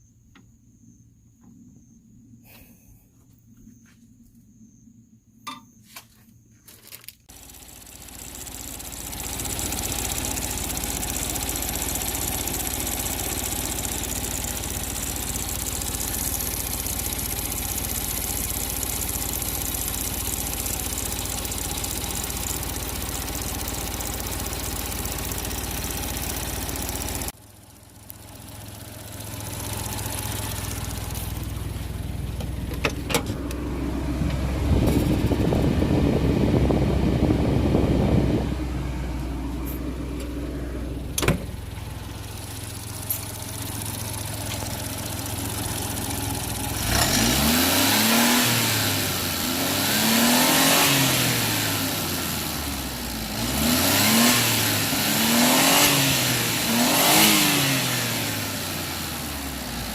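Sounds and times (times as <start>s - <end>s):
car engine idling and revving: 7.2s - 59.9s.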